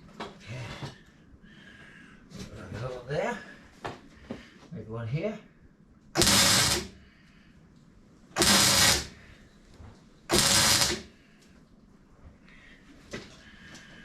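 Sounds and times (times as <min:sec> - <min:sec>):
electric welding bursts: 0:06.2 - 0:07.0, 0:08.4 - 0:09.2, 0:10.3 - 0:11.2.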